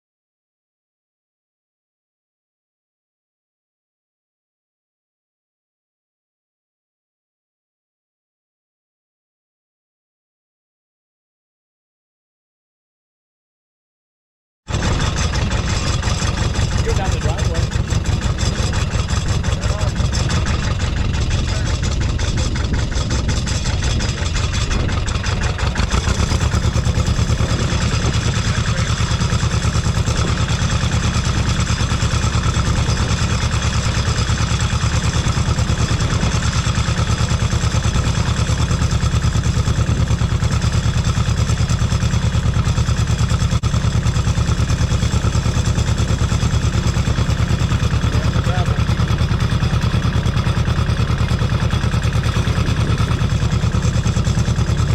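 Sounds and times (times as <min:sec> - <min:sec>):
tractor engine running: 0:14.7 - 0:54.9.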